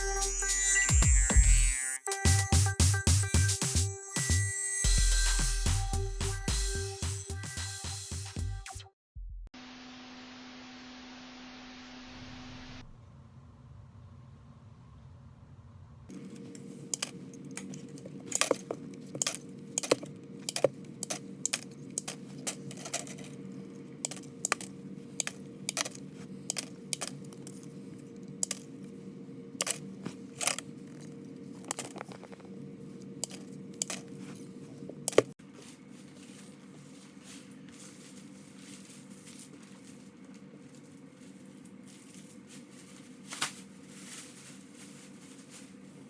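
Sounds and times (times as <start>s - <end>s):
steady low hum: 12.7s - 46.0s
metallic clinks and clatters: 16.1s - 23.4s.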